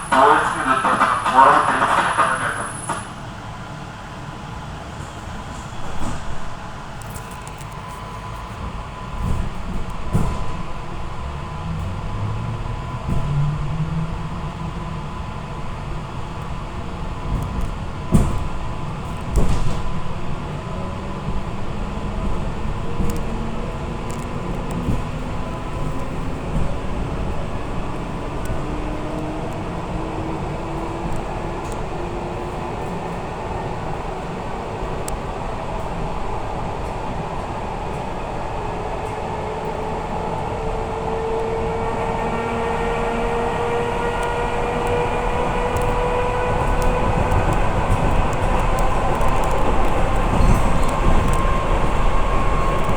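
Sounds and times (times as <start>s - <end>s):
train motor whine rising: 0.0s - 3.2s
train running gear rumble: 0.0s - 52.9s.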